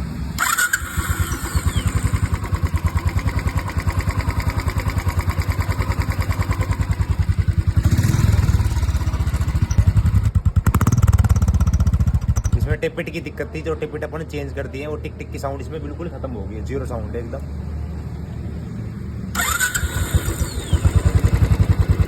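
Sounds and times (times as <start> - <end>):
motorcycle engine idling and revving: 0.0 - 13.0, 17.4 - 22.0.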